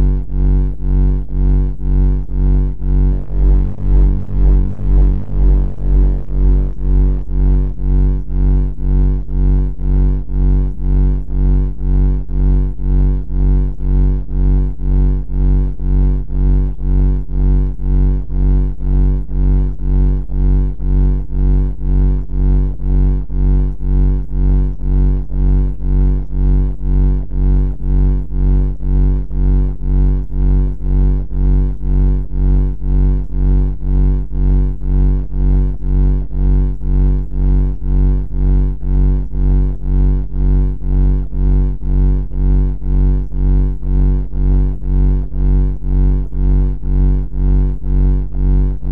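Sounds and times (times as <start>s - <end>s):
distorted pulsing low buzz: 0.0s - 48.9s.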